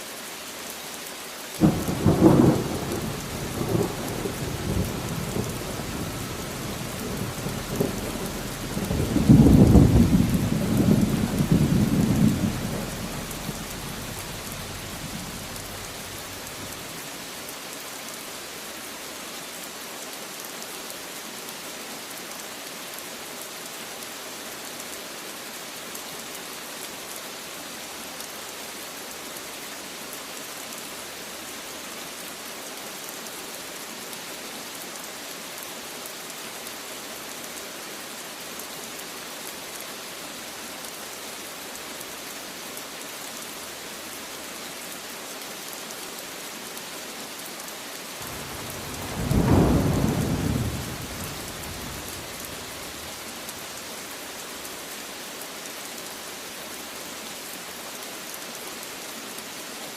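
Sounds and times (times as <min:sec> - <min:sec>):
steady rain: 0:00.0 - 0:59.9
thunder rolling: 0:06.7 - 0:16.8, 0:48.2 - 0:53.1.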